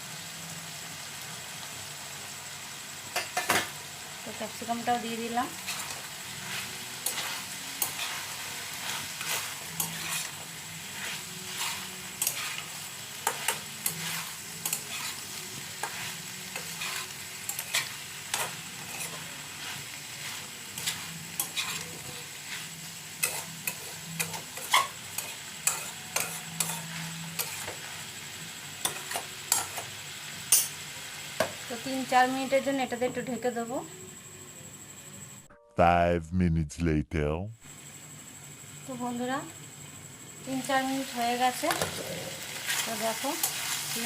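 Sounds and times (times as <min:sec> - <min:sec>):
food sizzling in a pan: 0:00.0 - 0:35.3, 0:37.7 - 0:44.0
spatula scraping a pan: 0:05.5 - 0:27.8, 0:42.4 - 0:44.0.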